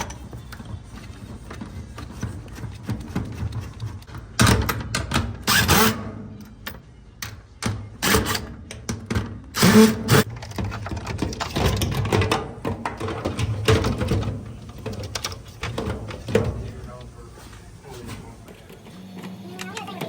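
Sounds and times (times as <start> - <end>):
mechanical clatter and knocks: 7.6 - 17.0.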